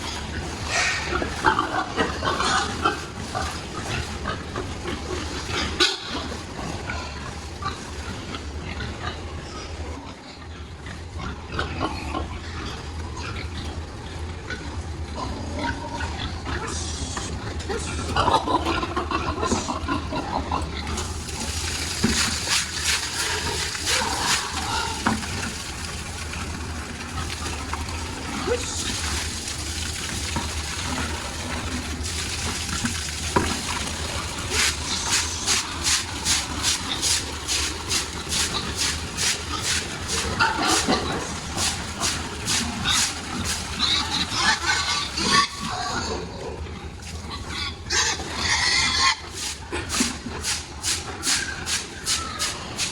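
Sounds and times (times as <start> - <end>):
brush scraping barn floor: 0.0 - 8.2, 20.8 - 26.5, 32.8 - 45.9, 47.0 - 52.9
pigs grunting and squealing: 0.0 - 52.9.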